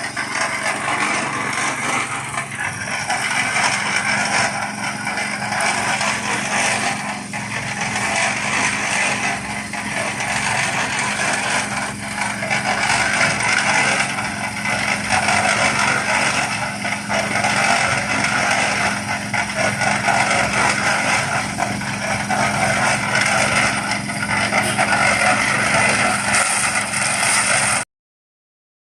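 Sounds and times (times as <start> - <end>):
small engine running: 0.0 - 27.8.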